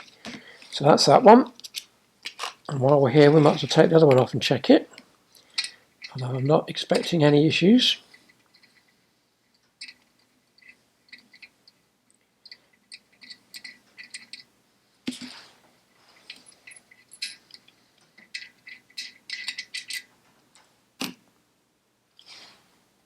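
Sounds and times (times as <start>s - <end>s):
tools clinking on metal: 5.5s - 6.2s, 12.4s - 14.5s, 16.2s - 17.7s.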